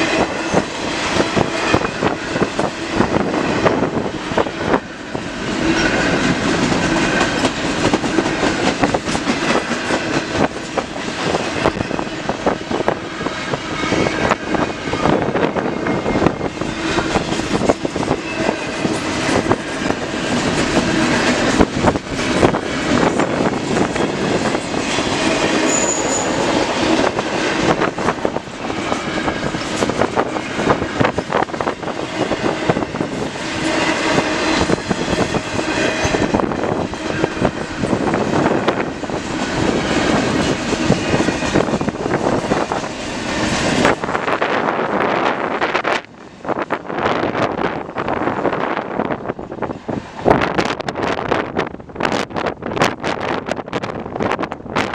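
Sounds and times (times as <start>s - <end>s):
train wheels clacking over rails: 0.0s - 51.0s
high squeak: 25.6s - 26.5s.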